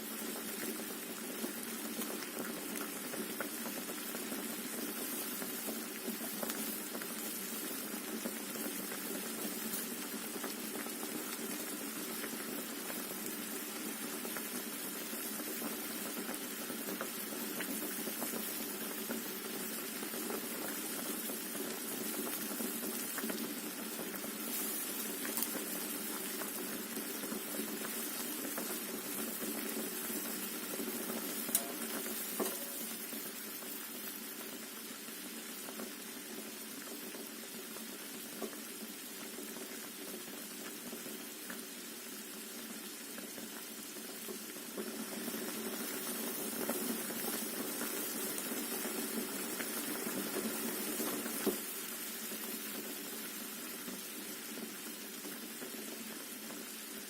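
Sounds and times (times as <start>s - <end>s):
water boiling and bubbling: 0.0s - 57.0s.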